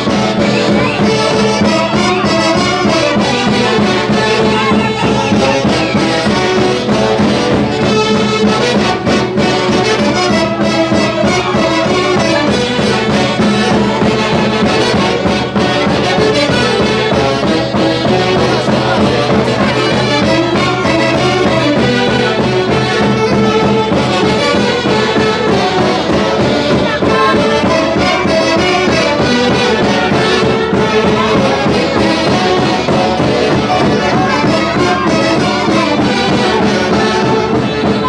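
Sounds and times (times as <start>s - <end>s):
folk orchestra led by brass: 0.0s - 38.0s.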